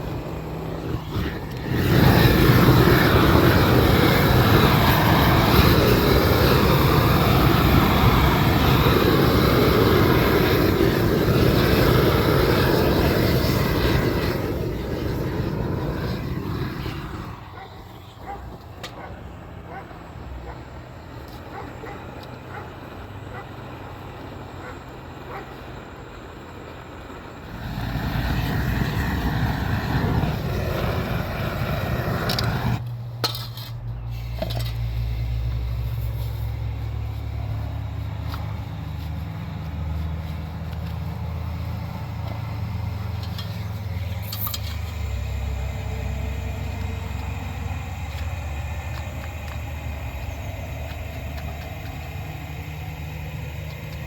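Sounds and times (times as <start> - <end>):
rushing noise: 0.0 - 17.9, 27.3 - 32.9
engine humming: 0.0 - 54.0.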